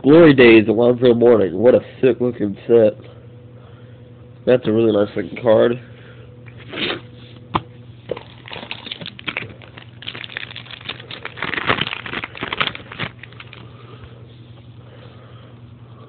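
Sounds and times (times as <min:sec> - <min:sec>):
wrapper and cards crinkling: 0:08.1 - 0:13.7.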